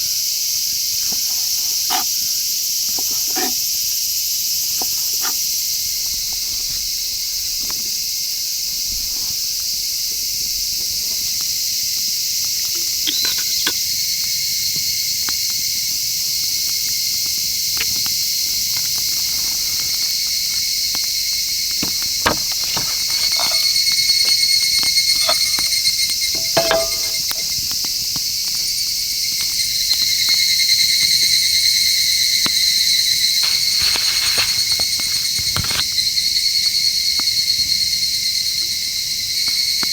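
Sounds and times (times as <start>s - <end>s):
insects chirring: 0.0s - 39.9s.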